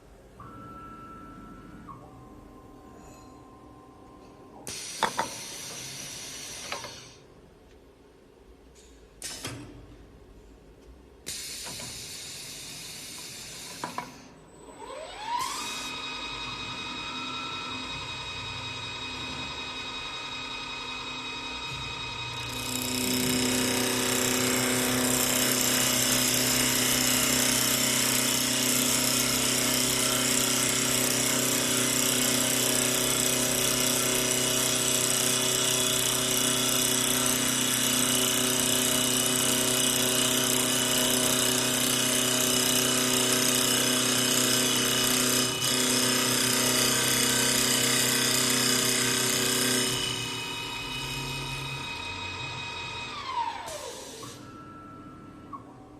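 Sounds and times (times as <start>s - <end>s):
wood lathe motor whine: 14.8s - 54.5s
wood cutting noise: 21.1s - 54.4s.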